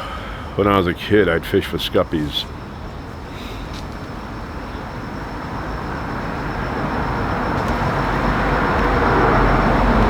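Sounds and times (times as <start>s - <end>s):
passing vehicle on road: 5.8s - 10.0s.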